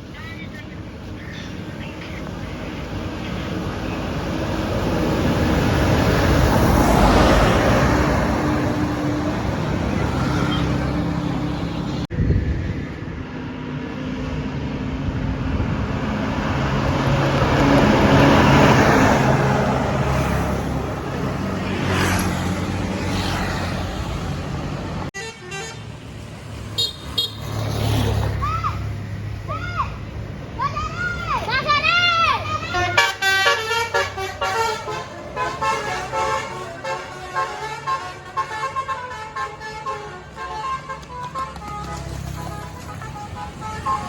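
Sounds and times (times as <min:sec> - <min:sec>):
buses passing on highway: 0:00.0 - 0:44.0
vehicle horns: 0:25.2 - 0:27.7, 0:32.4 - 0:44.0.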